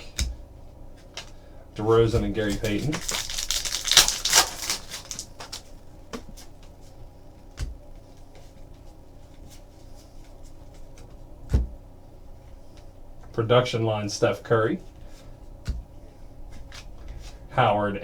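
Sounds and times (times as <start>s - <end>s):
cards rustling: 1.2s - 5.8s.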